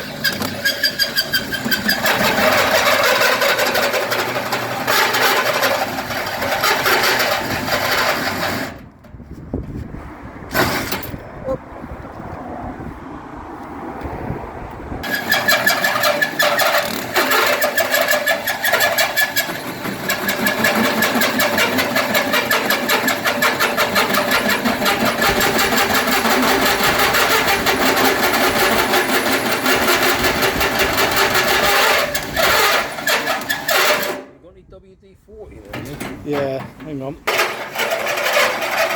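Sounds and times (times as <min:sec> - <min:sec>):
power tool cutting: 0:00.0 - 0:08.8.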